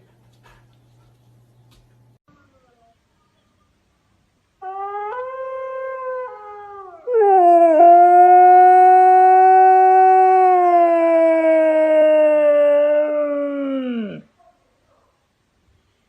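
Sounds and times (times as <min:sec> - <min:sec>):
dog howling: 0:04.6 - 0:14.3.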